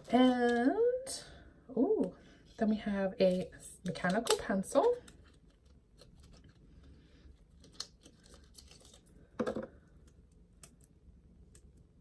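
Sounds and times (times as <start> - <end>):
packaging clicks and crackles: 3.3 - 6.6, 7.5 - 9.1.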